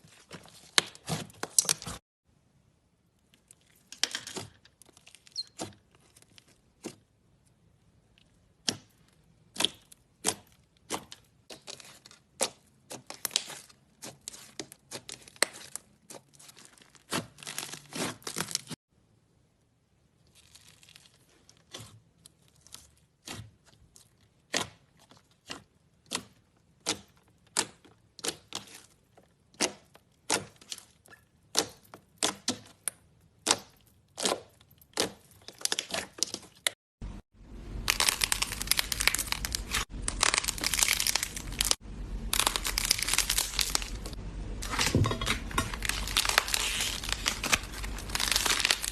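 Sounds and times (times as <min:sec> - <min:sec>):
crunchy slime crackling: 0:37.7 - 0:48.9.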